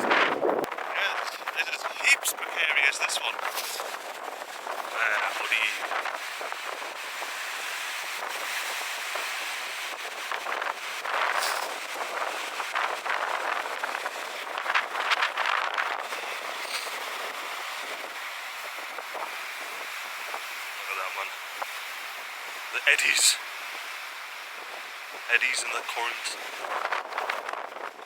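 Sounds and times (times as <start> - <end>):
wind buffeting microphone: 0.0 - 20.8, 26.4 - 28.0.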